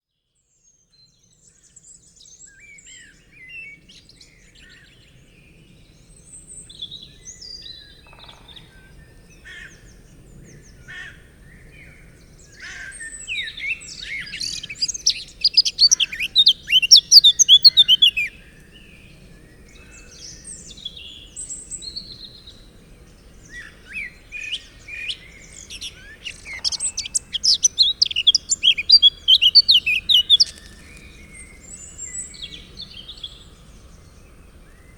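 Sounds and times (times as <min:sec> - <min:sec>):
bird warbling song: 0:12.3 - 0:34.9
soft bird calls: 0:12.5 - 0:20.9, 0:23.3 - 0:34.9.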